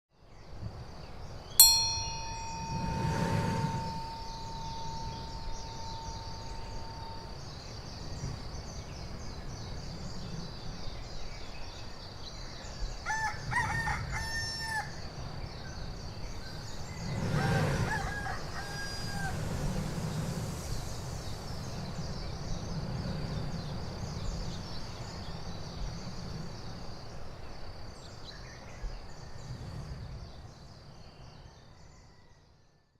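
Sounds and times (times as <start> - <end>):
steady high-pitched whine: 1.6 - 11.4
surf surging through blowhole: 1.6 - 11.5, 15.0 - 28.0
rooster crowing: 13.0 - 15.0, 17.4 - 19.4.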